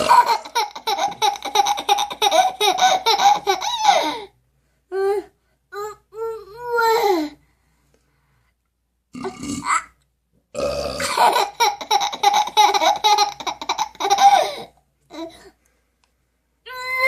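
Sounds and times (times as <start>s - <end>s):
burp: 0.0s - 0.2s, 9.1s - 9.9s, 10.5s - 11.2s
baby laughing: 0.0s - 4.3s, 11.0s - 15.5s.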